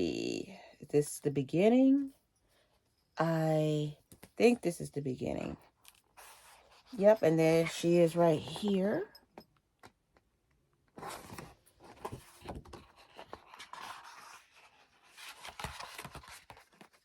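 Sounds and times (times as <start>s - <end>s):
magazine pages rustling: 11.0s - 17.0s.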